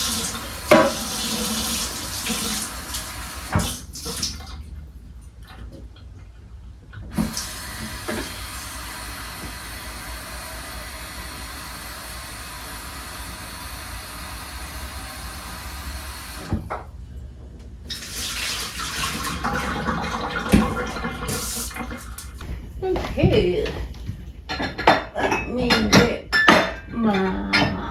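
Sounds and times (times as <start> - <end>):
tap water running: 0.0 - 16.9, 17.9 - 22.6.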